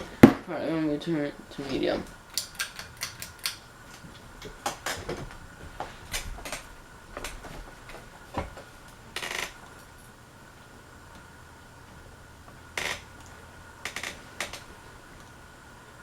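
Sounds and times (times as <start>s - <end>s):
ceiling fan humming: 0.0s - 16.0s.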